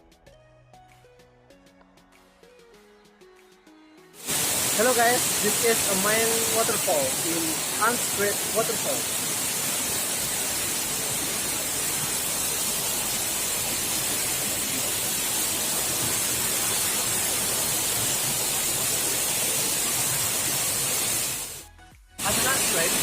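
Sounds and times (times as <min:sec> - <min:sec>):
waterfall rushing: 0:04.2 - 0:21.6, 0:22.2 - 0:23.0.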